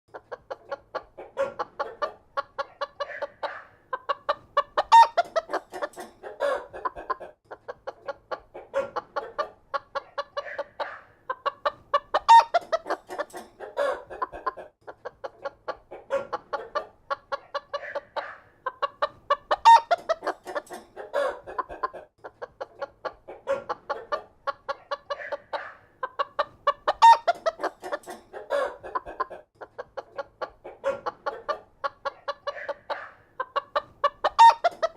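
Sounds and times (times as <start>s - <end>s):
chickens clucking: 0.1s - 34.9s
loud chicken call: 34.3s - 34.9s.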